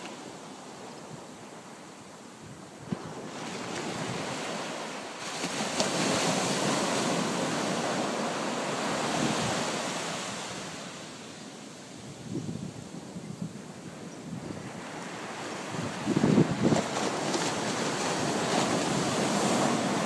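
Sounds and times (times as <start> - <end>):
sea waves breaking on shore: 2.9 - 12.0, 14.6 - 20.0.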